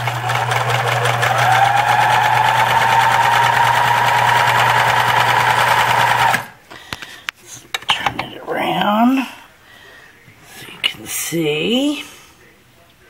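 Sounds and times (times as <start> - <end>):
sewing machine motor whine: 0.0 - 6.6.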